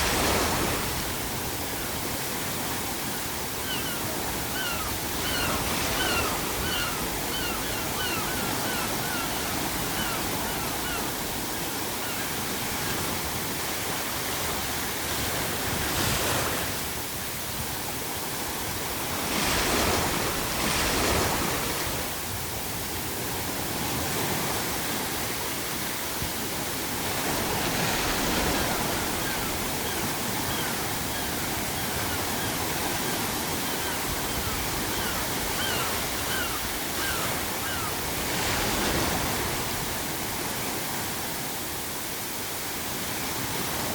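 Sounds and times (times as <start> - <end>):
ocean surf washing: 0.0 - 43.9
waves breaking: 0.0 - 43.9
seagull calling: 3.6 - 13.2, 28.4 - 38.6.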